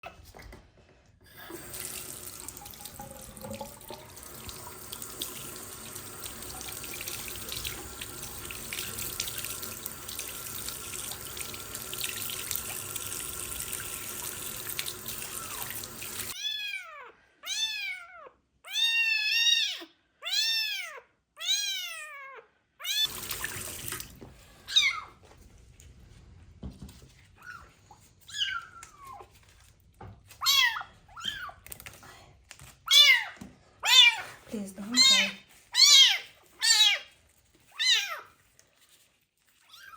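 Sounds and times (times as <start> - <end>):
tap water running: 1.2 - 16.4, 23.0 - 24.7
kitten meowing: 30.4 - 31.6.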